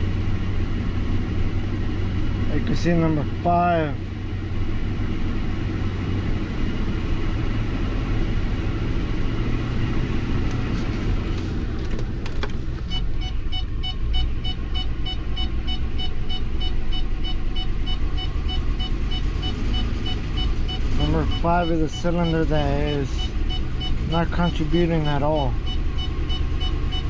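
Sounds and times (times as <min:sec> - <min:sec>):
misfiring engine idling: 0:12.5 - 0:27.0.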